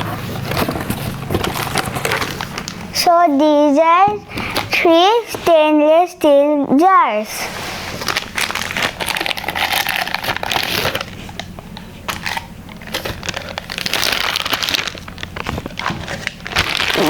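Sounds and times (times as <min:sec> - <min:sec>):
packaging crinkling and rustling: 0:00.0 - 0:02.9, 0:07.5 - 0:17.0.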